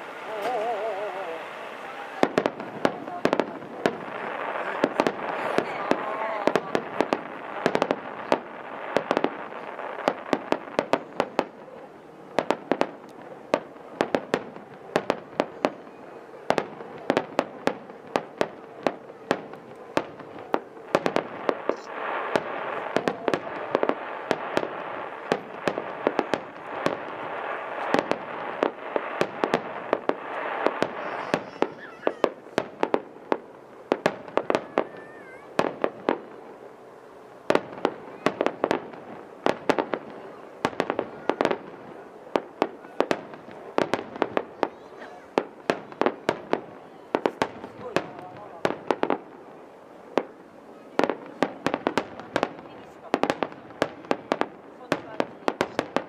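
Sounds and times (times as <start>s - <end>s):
continuous noisy wash: 0.0s - 56.0s
fireworks shells bursting: 20.0s - 36.2s.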